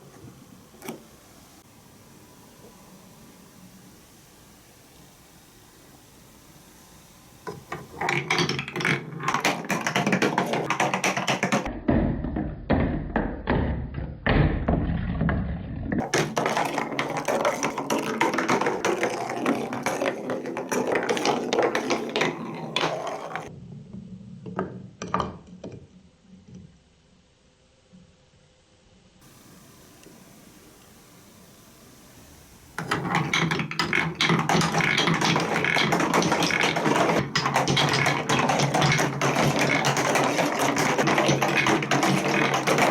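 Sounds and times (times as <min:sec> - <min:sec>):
marbles clattering down plastic track: 0:07.7 - 0:11.7, 0:14.8 - 0:23.5, 0:32.8 - 0:42.9.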